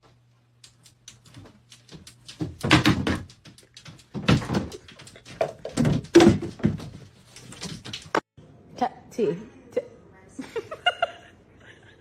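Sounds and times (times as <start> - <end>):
knocks and bumps: 1.9 - 8.3.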